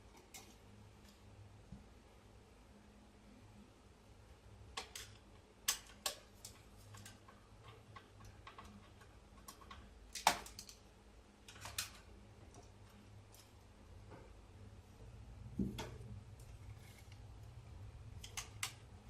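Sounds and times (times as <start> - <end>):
computer hardware clicks and taps: 4.7 - 10.8.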